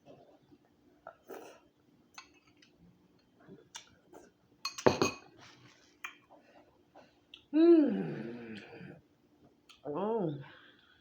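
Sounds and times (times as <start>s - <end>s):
tableware clicking and clinking: 4.7s - 5.3s.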